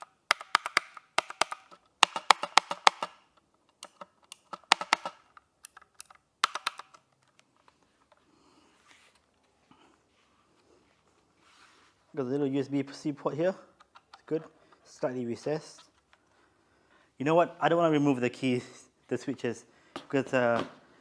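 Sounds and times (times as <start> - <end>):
mechanical keyboard clicks: 0.0 - 3.2, 3.8 - 7.0.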